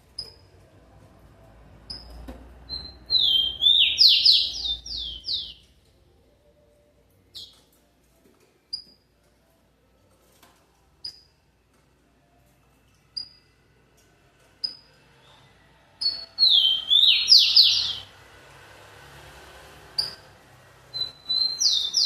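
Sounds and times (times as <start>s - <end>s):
sparrow singing whistle and trill: 2.7s - 5.6s, 16.0s - 18.1s, 20.9s - 22.0s.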